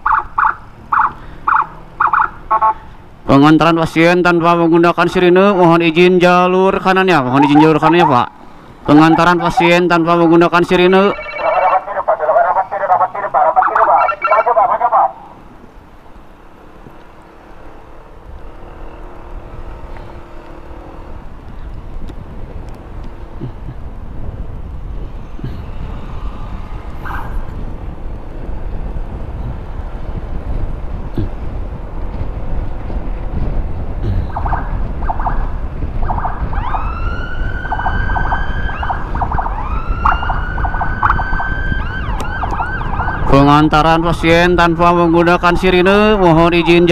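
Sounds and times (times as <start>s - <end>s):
siren chattering blips: 0.0s - 2.8s, 7.2s - 8.3s, 8.9s - 15.3s, 34.2s - 43.3s
siren rising wail: 0.0s - 2.8s, 7.0s - 8.3s, 8.9s - 15.4s, 34.2s - 43.5s
engine and road rumble: 0.0s - 46.9s
wind on microphone: 21.2s - 44.8s.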